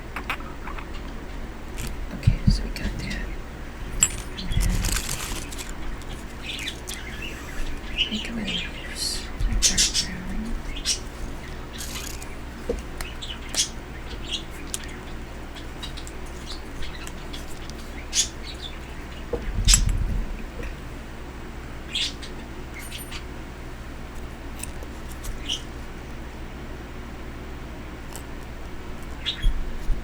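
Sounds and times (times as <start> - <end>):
pet birds chirping: 0.0 - 20.0, 21.9 - 23.3, 24.4 - 25.8, 29.0 - 29.9.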